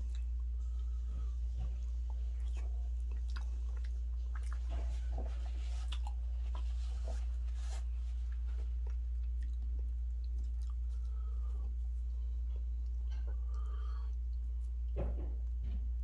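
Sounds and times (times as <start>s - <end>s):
steady low hum: 0.0s - 16.0s
wet chewing and smacking: 1.6s - 6.8s, 8.2s - 14.5s.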